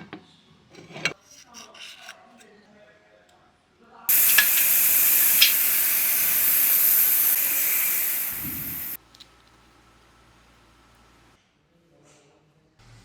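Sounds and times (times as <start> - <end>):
pressurised jet hissing: 4.1 - 9.0
short clicks: 4.1 - 9.0.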